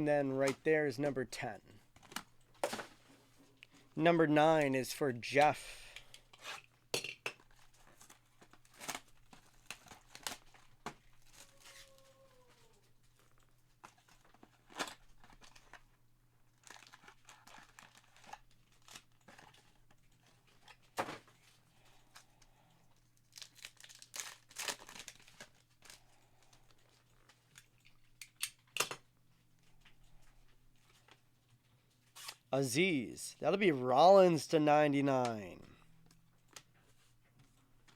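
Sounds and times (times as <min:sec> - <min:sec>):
wrappers crackling: 0:16.5 - 0:20.6, 0:23.1 - 0:27.8
card pack wrappers tearing: 0:23.3 - 0:26.0.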